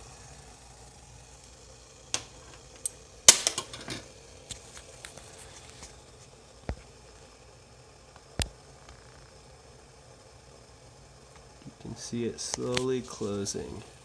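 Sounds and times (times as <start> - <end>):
metal clinks and knocks: 3.3 - 4.0.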